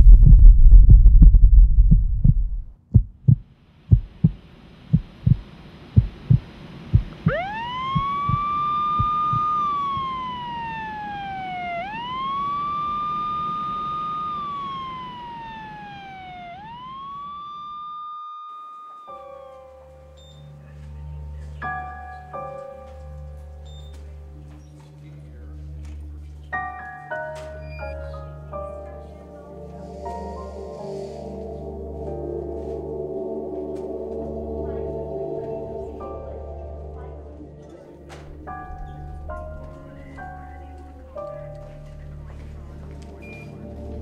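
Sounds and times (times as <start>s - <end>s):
heartbeat thumping: 0.0s - 5.4s, 6.0s - 10.8s
loud low rumble: 0.0s - 5.4s, 6.0s - 17.4s, 38.3s - 43.1s
emergency siren wailing: 7.0s - 18.9s.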